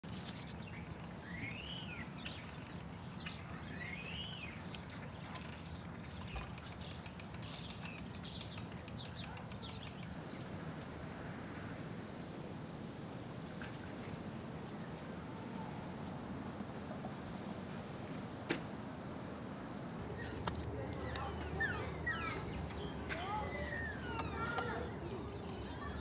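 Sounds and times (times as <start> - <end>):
small birds chirping: 0.1 - 11.9, 17.2 - 26.0
whistled bird notes: 1.2 - 2.5, 21.0 - 26.0.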